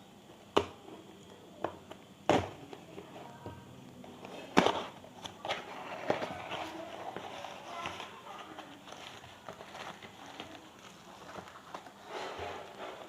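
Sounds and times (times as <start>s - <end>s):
scratchy cardboard rustle: 4.2s - 13.0s.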